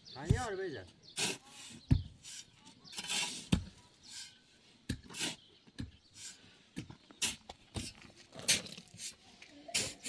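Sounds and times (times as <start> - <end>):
scrapes and knocks of building work: 1.8 - 3.9.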